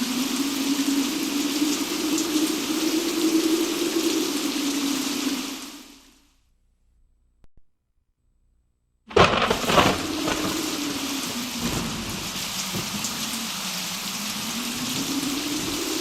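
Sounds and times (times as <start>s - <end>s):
pouring rain: 0.0s - 6.3s, 9.1s - 16.0s
sharp crack of thunder: 9.1s - 16.0s.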